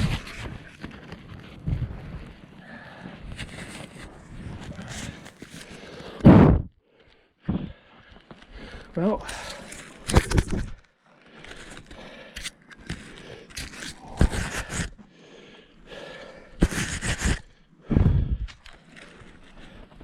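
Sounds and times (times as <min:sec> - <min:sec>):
heavy thumps: 0:06.2 - 0:06.7.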